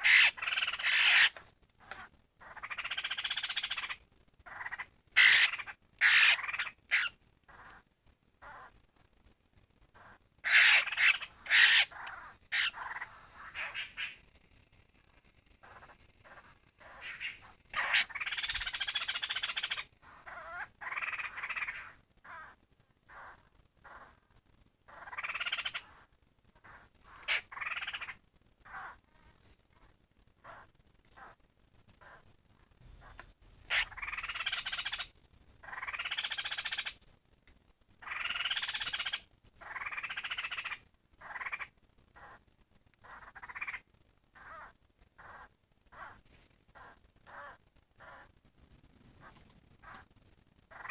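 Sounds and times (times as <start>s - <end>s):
bird harsh pulsed call: 0.0s - 1.3s, 11.5s - 11.9s
bird calling with harsh rattle: 0.0s - 7.7s, 10.0s - 14.2s, 15.6s - 22.4s, 25.0s - 26.0s, 33.7s - 37.0s, 38.0s - 42.4s.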